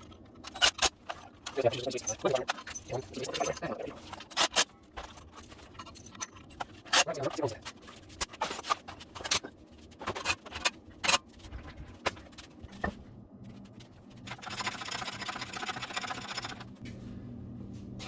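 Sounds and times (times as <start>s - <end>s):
metal tools clinking and knocking: 0.0s - 13.0s
fast even rattle: 14.2s - 16.8s.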